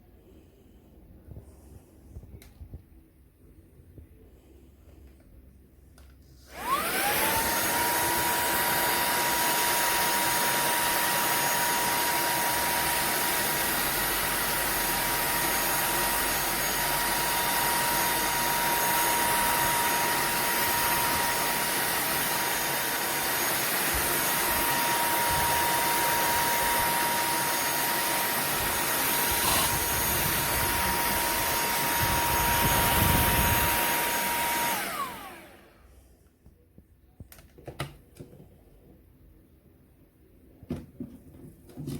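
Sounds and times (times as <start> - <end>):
handheld vacuum cleaner whine: 6.4 - 36.0.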